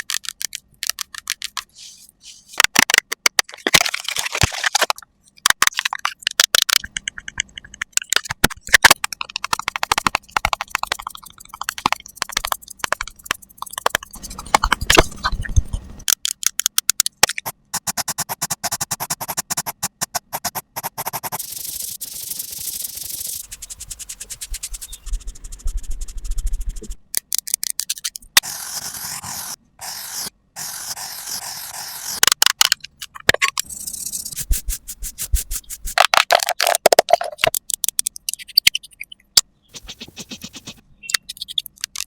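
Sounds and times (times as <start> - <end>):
rapid clicking and tapping: 0.0 - 1.7, 2.6 - 28.5, 32.2 - 42.0
scratchy scraping: 39.7 - 40.8.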